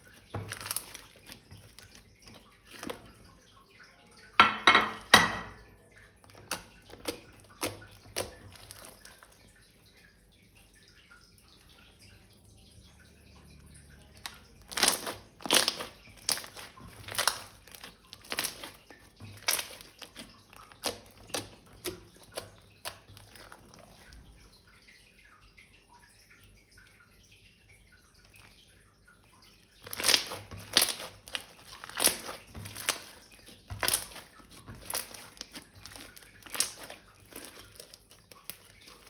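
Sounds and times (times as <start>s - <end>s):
slime squelching and clicking: 0.0s - 3.0s, 6.2s - 9.4s, 14.1s - 24.3s, 29.7s - 39.0s.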